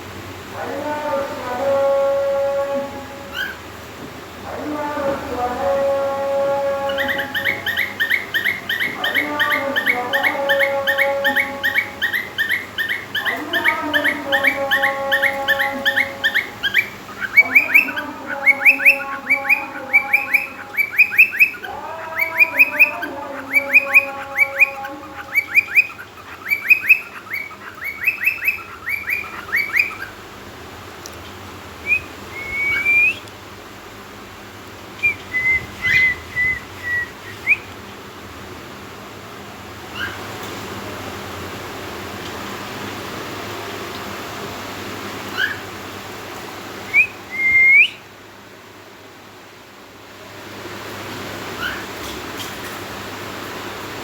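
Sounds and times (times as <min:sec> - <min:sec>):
drawn-out bird whistles: 0:14.0 - 0:30.1, 0:31.8 - 0:33.3, 0:35.0 - 0:37.7, 0:46.9 - 0:48.1
cockatiel whistling chirps: 0:23.6 - 0:30.1, 0:31.8 - 0:33.2, 0:35.0 - 0:37.7, 0:45.3 - 0:45.6, 0:46.9 - 0:48.0.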